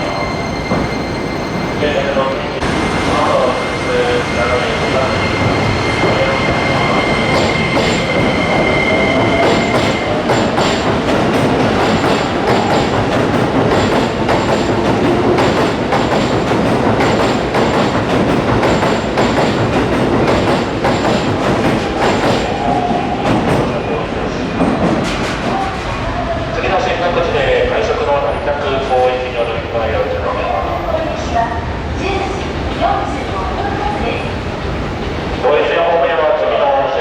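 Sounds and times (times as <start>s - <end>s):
high wheel squeal: 0.0s - 10.6s
train wheels clacking over rail joints: 7.2s - 22.6s, 24.6s - 25.9s.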